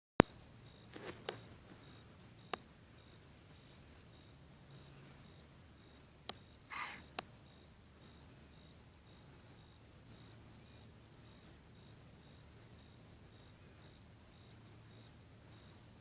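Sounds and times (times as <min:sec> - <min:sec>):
insects trilling: 0:00.3 - 0:16.0
short breathy hiss: 0:06.7 - 0:07.1.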